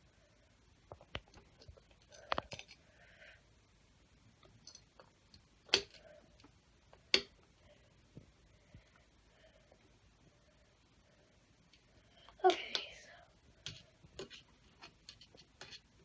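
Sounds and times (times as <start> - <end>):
small parts clicking and knocking: 0.8 - 3.3, 4.3 - 9.0, 11.7 - 16.0.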